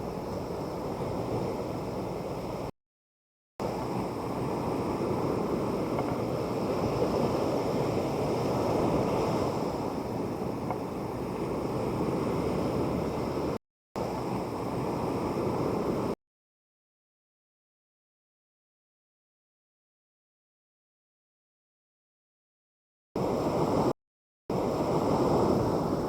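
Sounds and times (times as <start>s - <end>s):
wind on microphone: 0.0s - 2.7s, 3.6s - 16.2s, 23.2s - 23.9s, 24.5s - 26.0s
surf washing onto beach: 3.6s - 16.2s, 23.2s - 23.9s, 24.5s - 26.0s.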